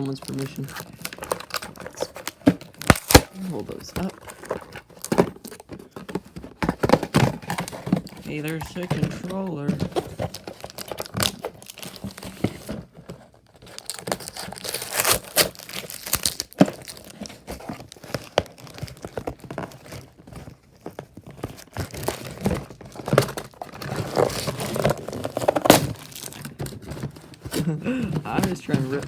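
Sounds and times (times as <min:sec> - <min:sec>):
packaging crinkling and tearing: 0:00.0 - 0:29.0.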